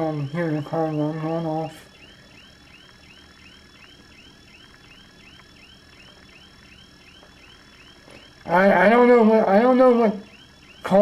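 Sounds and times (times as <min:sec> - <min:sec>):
faint car alarm siren whooping: 0:00.0 - 0:11.0.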